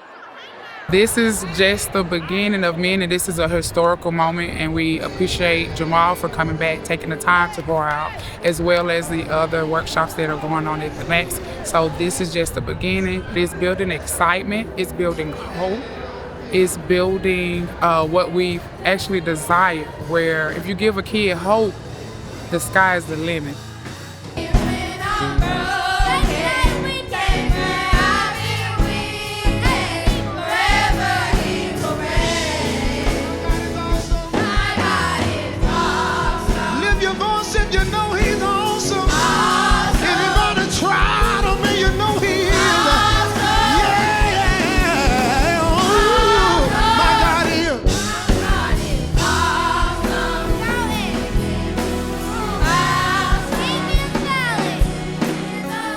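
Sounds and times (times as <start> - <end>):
gospel choir singing with band: 0.0 - 15.5, 19.0 - 55.9
steady drum beat: 21.8 - 55.7.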